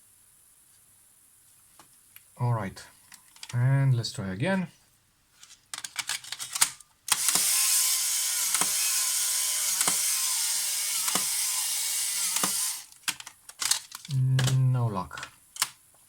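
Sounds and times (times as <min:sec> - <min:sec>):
sharp camera clicks: 0:06.4 - 0:14.6
camera motor and gears running: 0:07.1 - 0:13.0.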